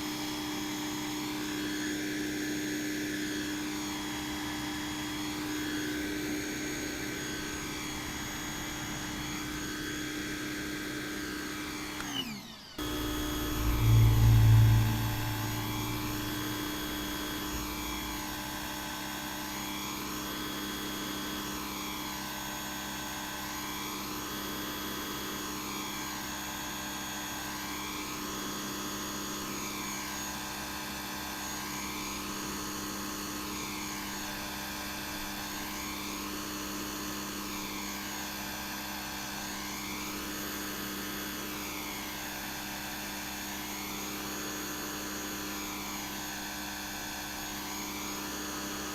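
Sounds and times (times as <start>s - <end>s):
pressure washer motor running: 0.0s - 24.6s
loud low rumble: 12.8s - 18.6s.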